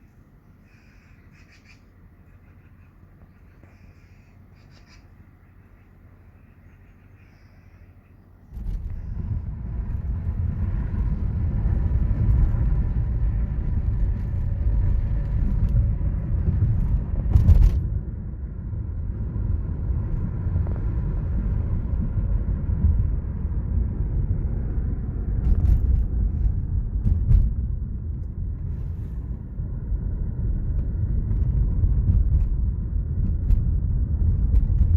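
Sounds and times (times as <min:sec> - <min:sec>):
loud low rumble: 0:08.5 - 0:34.9.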